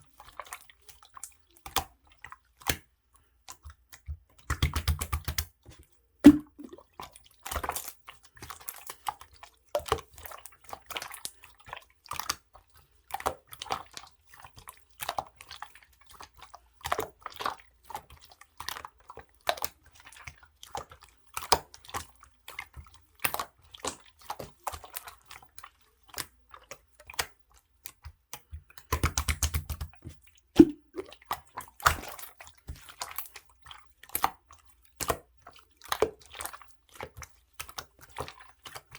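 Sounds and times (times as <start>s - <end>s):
slime squishing with sticky clicks: 6.2s - 6.8s, 21.4s - 33.4s, 34.0s - 38.9s.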